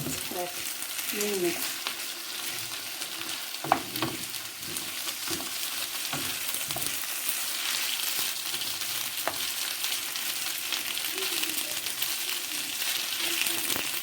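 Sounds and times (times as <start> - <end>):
food sizzling in oil: 0.0 - 14.0
utensil scraping and knocking pan: 2.4 - 7.0.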